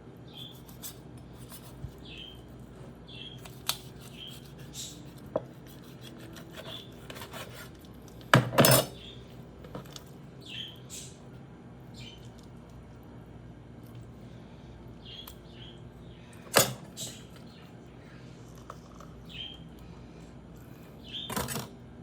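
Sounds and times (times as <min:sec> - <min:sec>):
knife scraping on cutting board: 0:00.4 - 0:01.9, 0:03.4 - 0:07.8
utensils clattering: 0:08.4 - 0:09.0.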